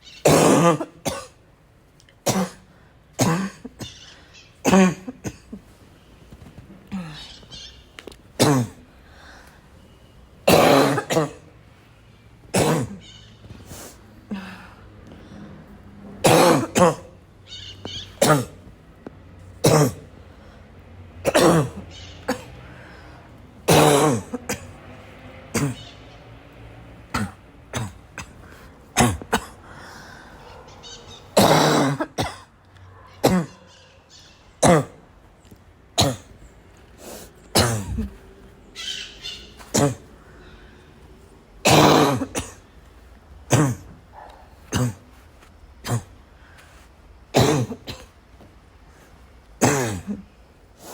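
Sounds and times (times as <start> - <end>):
person barking cough: 0.2 - 1.4, 2.2 - 4.0, 4.6 - 5.6, 8.4 - 8.8, 10.5 - 11.5, 12.6 - 13.0, 16.2 - 17.2, 18.2 - 18.7, 19.6 - 20.1, 21.3 - 22.6, 23.7 - 24.8, 25.5 - 25.8, 29.0 - 29.6, 31.4 - 32.5, 33.2 - 33.8, 34.6 - 35.0, 37.6 - 38.2, 39.6 - 40.1, 41.6 - 42.6, 43.5 - 45.2, 47.4 - 48.1, 49.6 - 50.3.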